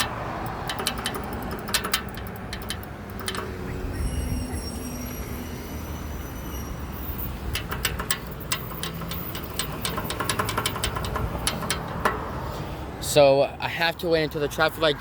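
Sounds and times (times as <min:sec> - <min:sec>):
sharp clicks or rattles: 0:00.0 - 0:03.9, 0:07.4 - 0:12.5
low rumble of traffic: 0:00.0 - 0:15.0.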